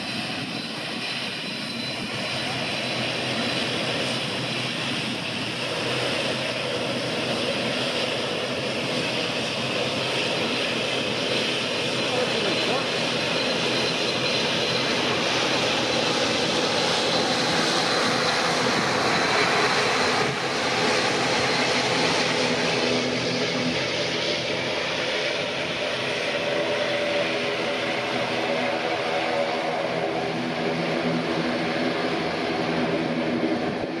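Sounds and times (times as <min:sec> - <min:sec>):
jet engines roaring: 0:00.0 - 0:34.0.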